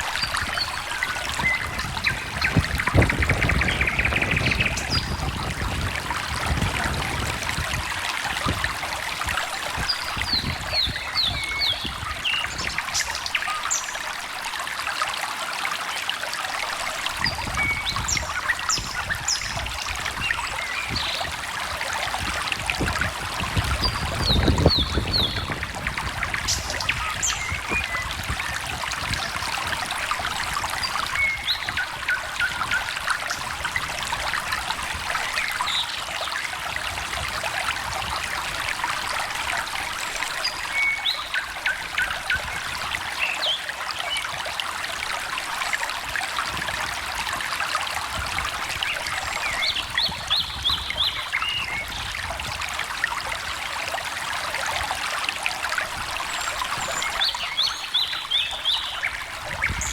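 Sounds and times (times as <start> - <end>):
birds calling: 0.0 - 5.9, 9.6 - 14.1, 23.6 - 29.5, 56.0 - 59.9
stream trickling and splashing: 0.0 - 59.9.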